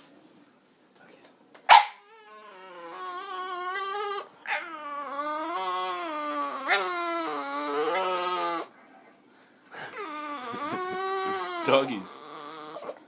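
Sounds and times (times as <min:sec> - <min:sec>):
dog yipping: 0:01.7 - 0:02.2, 0:03.5 - 0:05.2
dog yelping: 0:01.7 - 0:08.7, 0:09.9 - 0:13.0
dog whining: 0:01.9 - 0:08.7, 0:09.8 - 0:13.0.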